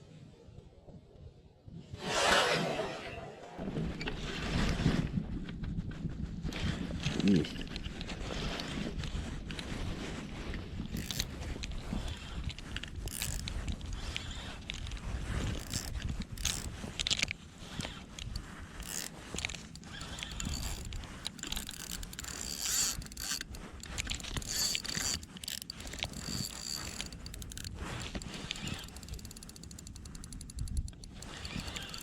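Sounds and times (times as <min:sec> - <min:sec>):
fishing reel gears whirring and clicking: 0:10.9 - 0:14.8, 0:15.5 - 0:32.0.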